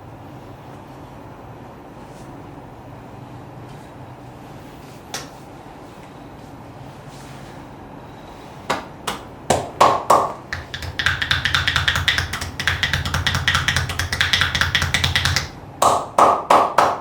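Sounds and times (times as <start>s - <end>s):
hands slapping a back: 5.1s - 5.3s, 8.7s - 17.0s.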